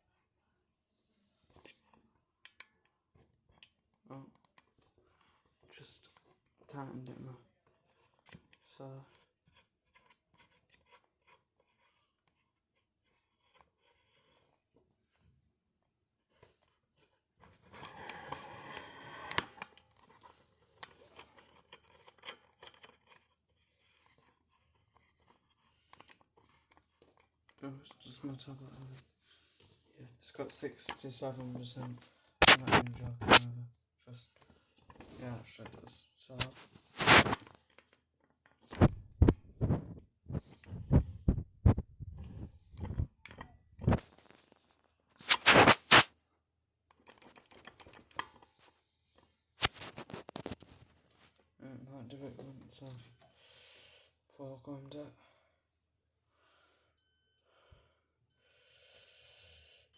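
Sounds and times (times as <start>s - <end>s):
rustling and scraping handling noise: 16.2s - 53.3s
sharp click: 32.4s - 33.5s.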